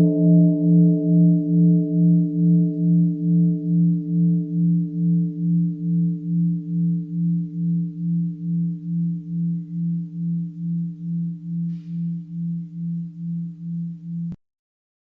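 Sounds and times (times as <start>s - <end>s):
bell ringing with low tone: 0.0s - 14.4s.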